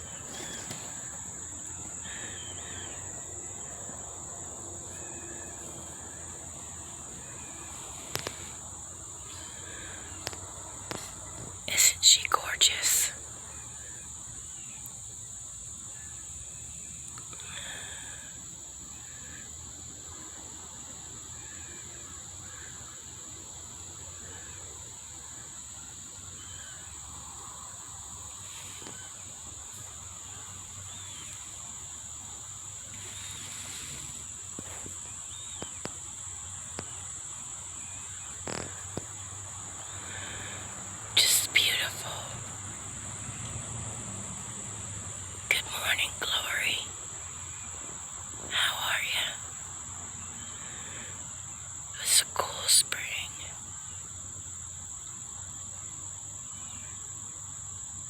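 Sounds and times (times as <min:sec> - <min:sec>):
insects droning: 0:00.0 - 0:58.0
faint bird chirps: 0:41.2 - 0:42.4.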